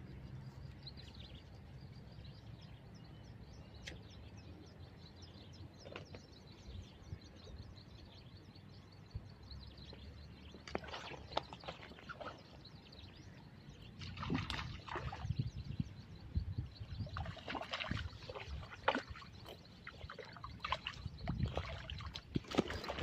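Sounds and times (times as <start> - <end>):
water splashing and sloshing: 10.4 - 16.0, 16.7 - 23.0.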